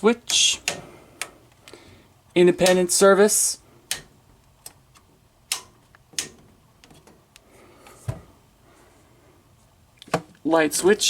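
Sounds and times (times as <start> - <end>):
switch clicks: 2.6 - 2.9, 3.9 - 6.4.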